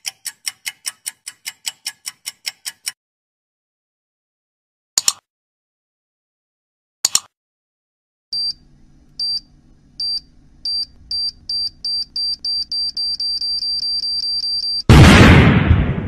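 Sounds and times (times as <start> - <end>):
electronic countdown beeps: 10.0 - 14.9.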